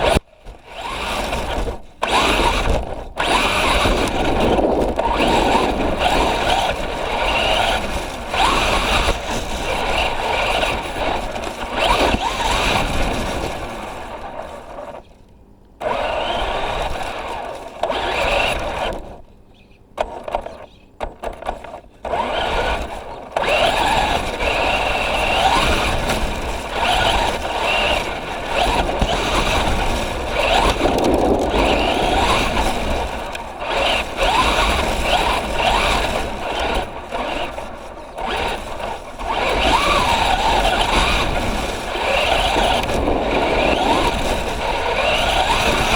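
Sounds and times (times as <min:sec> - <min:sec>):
electric motor whining: 0:00.0 - 0:15.2, 0:15.8 - 0:45.9
rough driving noise: 0:00.0 - 0:19.3, 0:20.0 - 0:45.9.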